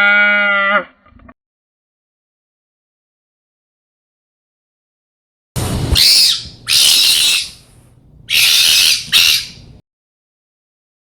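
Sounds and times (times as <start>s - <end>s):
harsh hissing dinosaur screeches: 5.8s - 7.6s, 8.3s - 9.6s.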